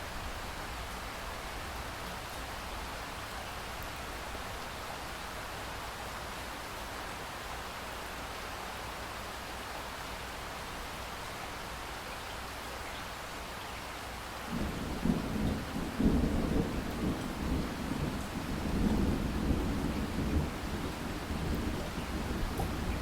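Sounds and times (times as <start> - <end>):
rainfall hiss: 0.0 - 23.0
thunder rumbling: 14.5 - 23.0.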